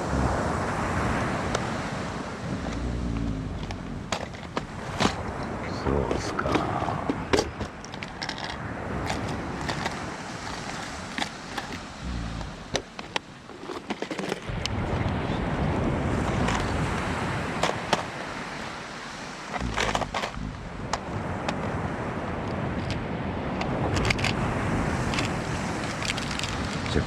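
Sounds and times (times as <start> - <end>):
gusty low rumbles: 0.0 - 13.2, 14.5 - 17.6, 19.6 - 22.8
wind buffeting microphone: 0.0 - 13.7, 14.3 - 27.0
surf rushing: 0.0 - 13.9
sharp clicks and crackles: 6.5 - 15.2, 19.6 - 21.6, 23.6 - 24.4, 25.1 - 27.0.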